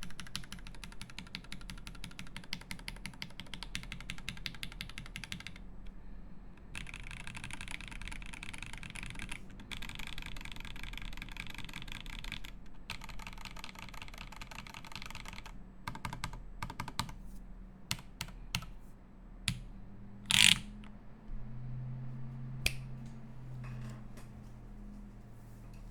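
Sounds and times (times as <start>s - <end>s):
typing on mechanical keyboard: 0.0s - 5.7s, 6.6s - 17.2s, 20.3s - 20.8s
loud keystroke: 20.3s - 20.9s.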